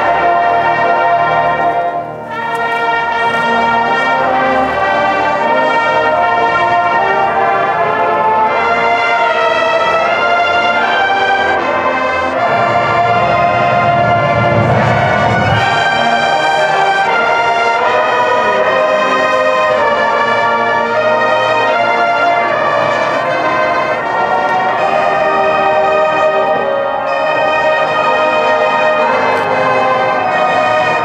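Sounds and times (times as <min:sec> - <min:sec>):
low brass and drums: 0:00.0 - 0:21.0
marching bands playing: 0:00.0 - 0:31.0.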